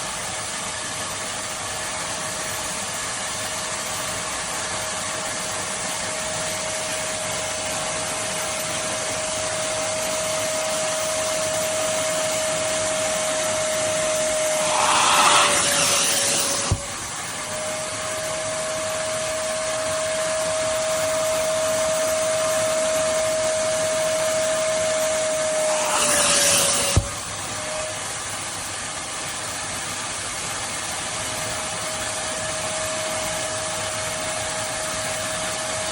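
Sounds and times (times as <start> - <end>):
vacuum cleaner running: 0.0 - 35.9
vacuum hissing surge: 2.5 - 27.8.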